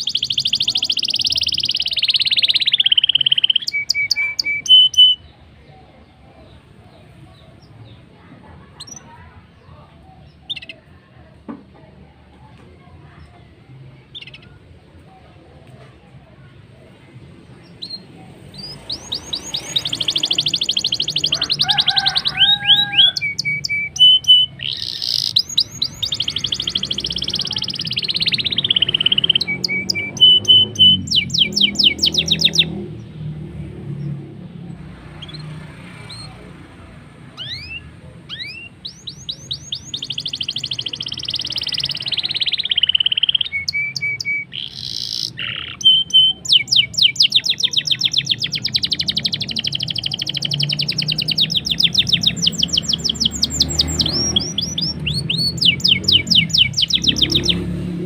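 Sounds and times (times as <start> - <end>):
quick rising bird chirps: 0.0 - 5.2, 17.8 - 32.8, 37.4 - 57.8
bird singing rolling trills: 0.0 - 11.1, 13.1 - 14.8, 16.9 - 33.3, 37.3 - 58.0.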